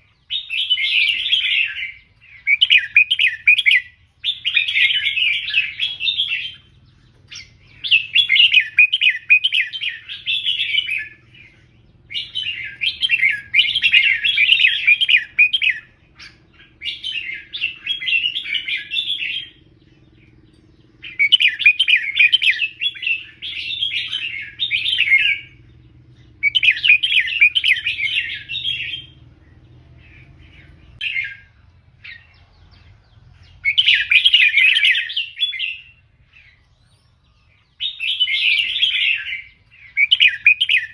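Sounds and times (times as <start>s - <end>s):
bird warbling song: 0.0s - 40.9s.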